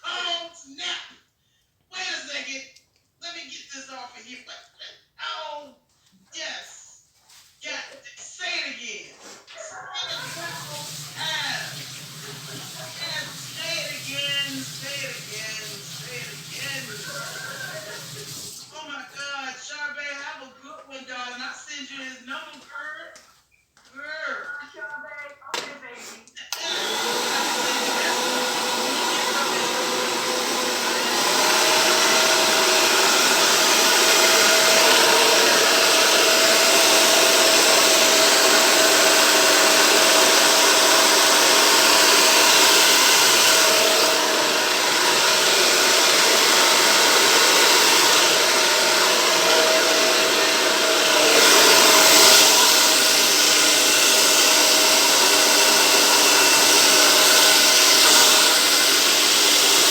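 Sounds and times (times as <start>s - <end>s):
hair dryer blowing: 10.1s - 19.3s, 26.5s - 59.9s.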